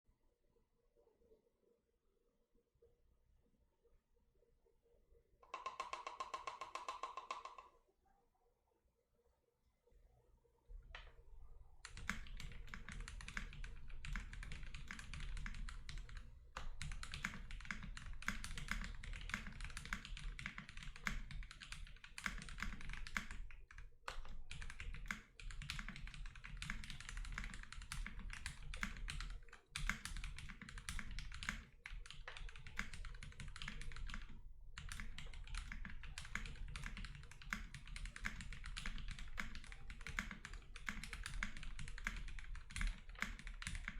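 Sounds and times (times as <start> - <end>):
mechanical keyboard typing: 5.4 - 7.7, 11.8 - 43.9.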